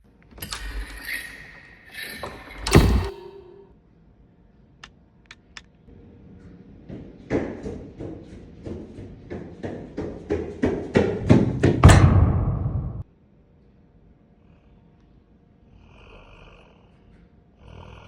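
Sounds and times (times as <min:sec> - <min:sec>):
loud slam with ringing: 0:02.6 - 0:03.6, 0:11.4 - 0:13.0
rhythmic thumps: 0:02.6 - 0:03.7, 0:11.2 - 0:13.0.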